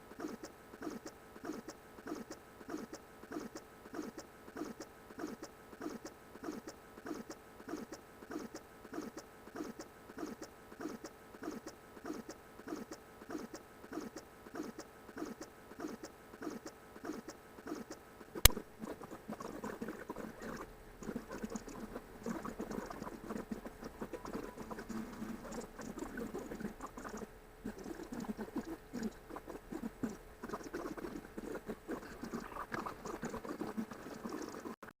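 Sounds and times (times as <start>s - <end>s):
sped-up cat chattering and rustling: 0.0s - 34.8s.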